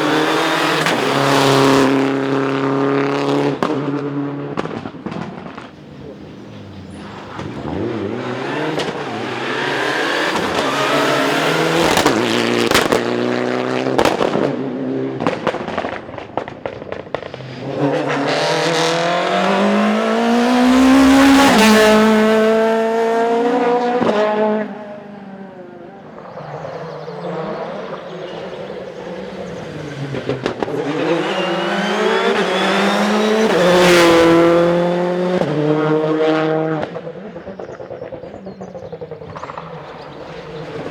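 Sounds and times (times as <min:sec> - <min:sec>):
rally car engines revving hard: 0:00.0 - 0:40.9
sharp exhaust pops and cracks: 0:03.5 - 0:08.1, 0:10.2 - 0:18.0, 0:26.0 - 0:34.7, 0:36.7 - 0:40.9.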